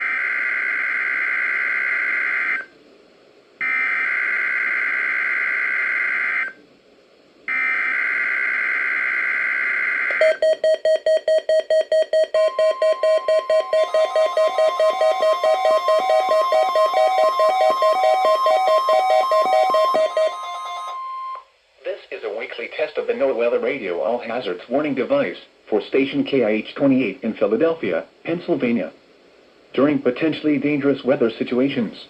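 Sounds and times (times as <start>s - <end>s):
buzzing data bursts: 12.4s - 21.0s.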